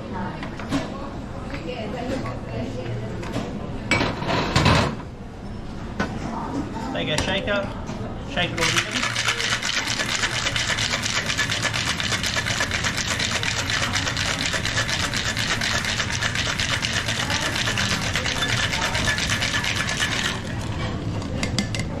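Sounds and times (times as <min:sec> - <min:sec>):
ice rattling in cocktail shaker: 0:08.5 - 0:21.5.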